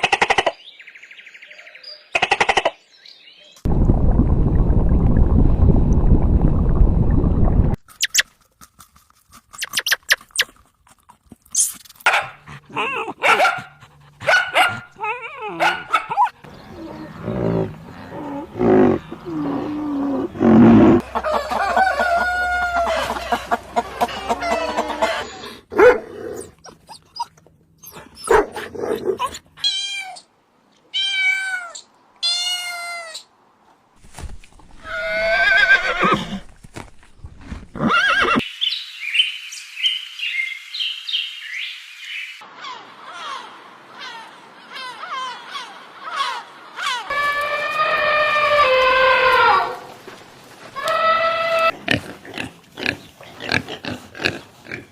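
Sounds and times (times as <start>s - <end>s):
varied animal calls: 14.9s - 25.6s, 42.4s - 49.8s
dense rasping animal noise: 16.4s - 21.7s.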